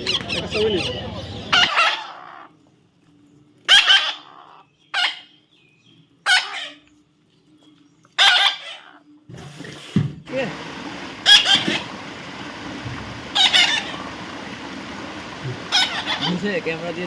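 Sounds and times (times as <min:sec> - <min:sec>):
parrot squawking: 0:00.0 - 0:02.5, 0:03.7 - 0:05.3, 0:06.2 - 0:06.8, 0:08.2 - 0:09.0, 0:11.2 - 0:12.0, 0:13.2 - 0:14.3, 0:15.6 - 0:17.0.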